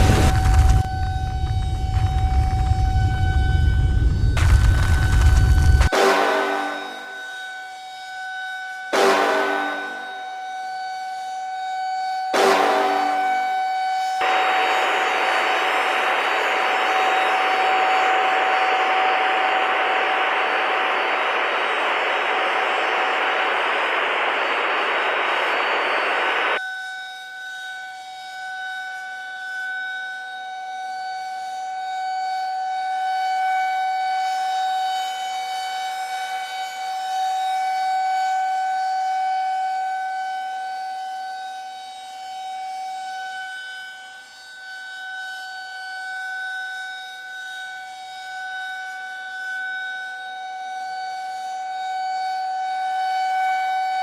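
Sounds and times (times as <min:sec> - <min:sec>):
loud rushing noise: 0:00.0 - 0:07.2, 0:09.0 - 0:10.2, 0:12.4 - 0:13.5, 0:14.2 - 0:26.6
air-raid siren steady tone: 0:00.0 - 0:54.0.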